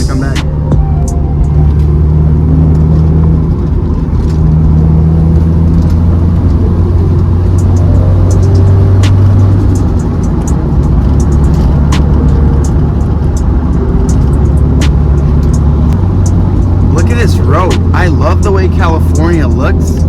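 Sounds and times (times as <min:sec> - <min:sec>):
car engine and exhaust droning: 0:00.0 - 0:20.0.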